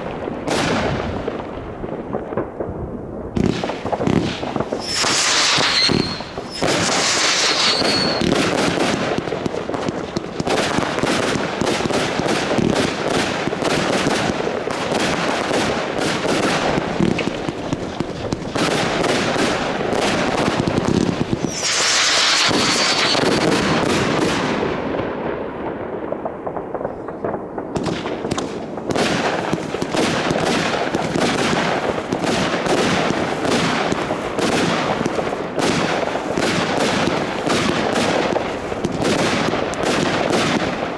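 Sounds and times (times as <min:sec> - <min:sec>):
fireworks bangs and crackling: 0:00.0 - 0:40.9
fireworks high hissing: 0:03.6 - 0:09.1, 0:16.1 - 0:24.2, 0:28.3 - 0:40.4.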